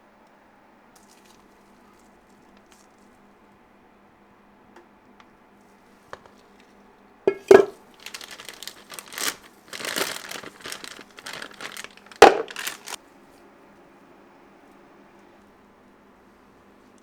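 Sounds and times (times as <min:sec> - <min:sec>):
crinkly material rustling: 0:07.3 - 0:13.0.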